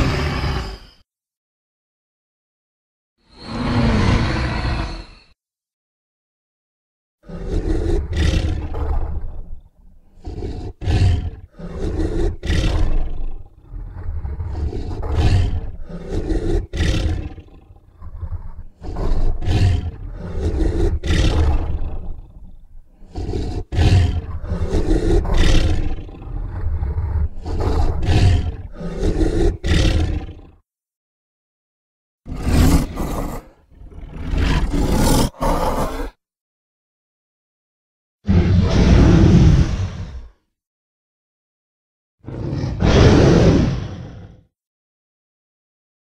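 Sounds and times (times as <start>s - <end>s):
deep dragon roars and growls: 0.0s - 1.0s, 3.3s - 5.4s, 7.2s - 30.6s, 32.3s - 36.2s, 38.2s - 40.5s, 42.2s - 44.5s.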